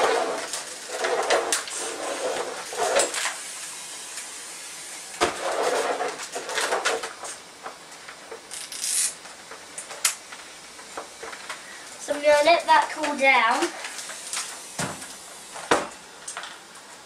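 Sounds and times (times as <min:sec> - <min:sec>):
steam mop hissing and sputtering: 0:00.0 - 0:06.4, 0:11.2 - 0:15.7.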